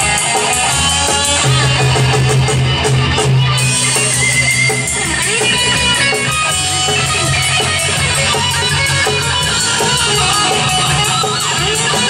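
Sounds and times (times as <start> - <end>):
guitar-led band music: 0.0 - 12.0.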